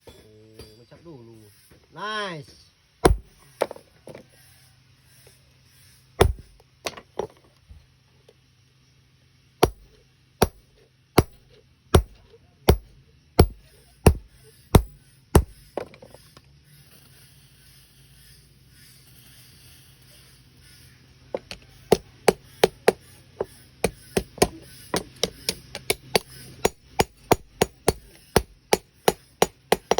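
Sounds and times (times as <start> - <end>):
hammer striking iron: 3.0 - 3.4, 6.2 - 6.6, 9.6 - 15.9, 21.4 - 29.9.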